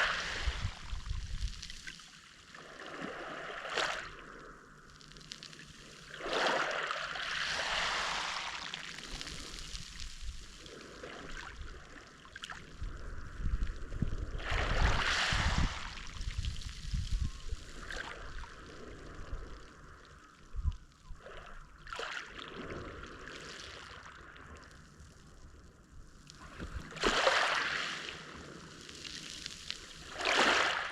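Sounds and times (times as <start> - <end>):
waves washing onto shore: 0.0 - 4.4, 5.5 - 13.2, 14.2 - 20.2, 26.3 - 30.9.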